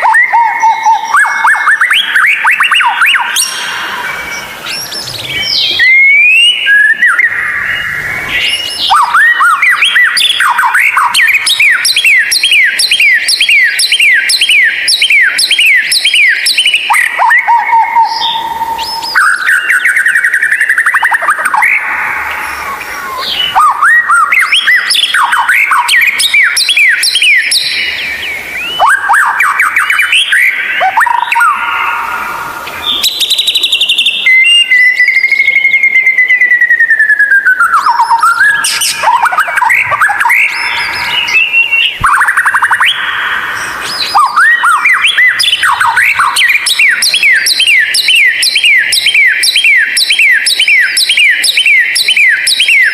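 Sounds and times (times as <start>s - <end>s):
bird chattering trills: 0.0s - 35.6s, 37.7s - 52.9s
bird singing whistled notes: 0.0s - 52.9s
long downward sliding whistle: 4.7s - 7.3s.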